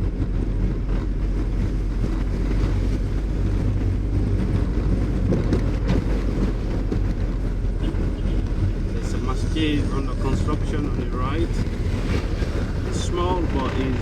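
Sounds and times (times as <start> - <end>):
car engine and tyres rumbling: 0.0 - 14.0.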